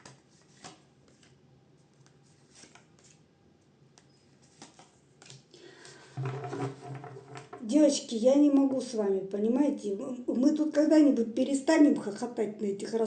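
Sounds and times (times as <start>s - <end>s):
cards clicking and rustling: 0.0s - 3.2s, 4.0s - 5.5s.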